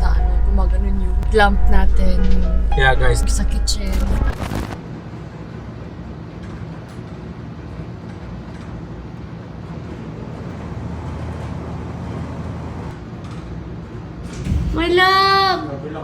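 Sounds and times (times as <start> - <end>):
deep hum: 0.0 - 4.8, 14.4 - 15.4
low mechanical rumble: 0.0 - 6.2, 7.5 - 15.7.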